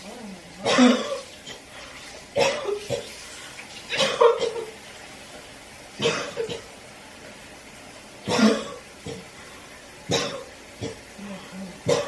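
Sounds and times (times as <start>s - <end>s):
young woman coughing: 0.6s - 1.2s, 2.4s - 3.0s, 3.9s - 4.7s, 6.0s - 6.6s, 8.3s - 8.8s, 10.1s - 11.0s.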